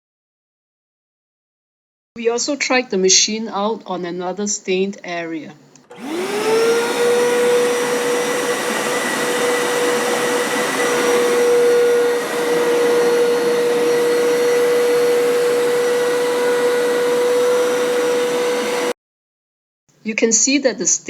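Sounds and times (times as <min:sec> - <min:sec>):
carpet washer motor whining: 0:05.8 - 0:19.0
carpet washer scrubbing carpet: 0:05.9 - 0:19.0.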